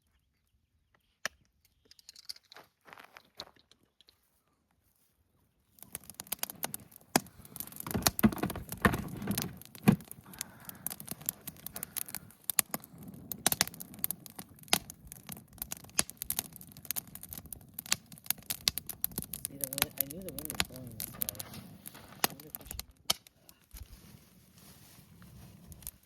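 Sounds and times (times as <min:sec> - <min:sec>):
campfire crackling and popping: 0:05.7 - 0:26.0
knocks and rustling: 0:06.0 - 0:10.2.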